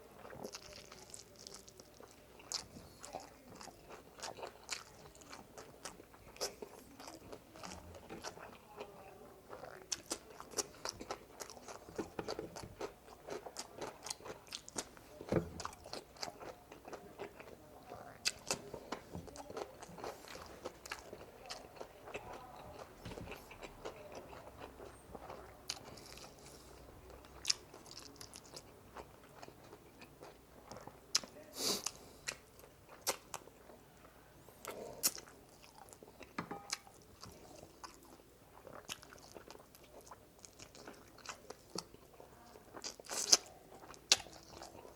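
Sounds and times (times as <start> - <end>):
crunchy chewing and biting: 34.6 - 44.9.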